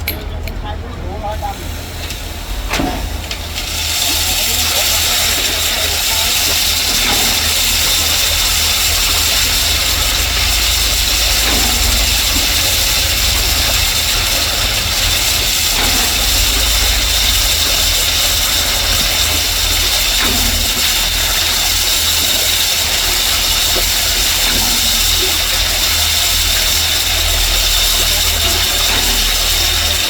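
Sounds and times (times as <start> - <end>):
excavator diesel engine running: 0.0 - 30.0.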